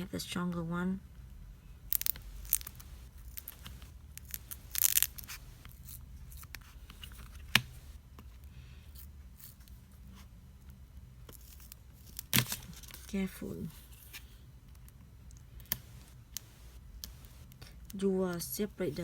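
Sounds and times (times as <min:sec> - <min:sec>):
adhesive tape tearing: 0:01.9 - 0:06.6.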